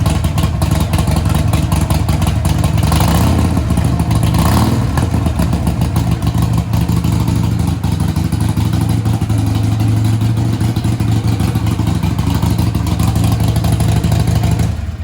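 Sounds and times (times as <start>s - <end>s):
motorcycle engine idling: 0.0s - 15.0s.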